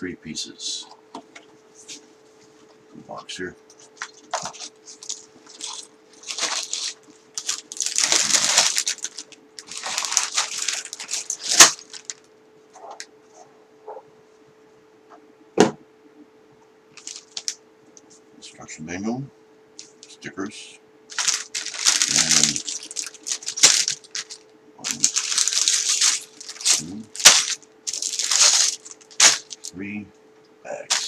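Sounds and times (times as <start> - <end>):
cardboard rustling and scraping: 3.8 - 12.2, 21.1 - 29.7.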